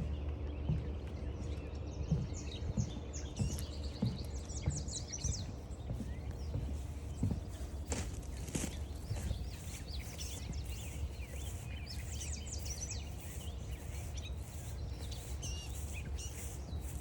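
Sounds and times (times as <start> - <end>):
footsteps on forest trail: 0.0 - 17.0
songbirds singing: 0.0 - 17.0
steady low rumble: 0.0 - 17.0.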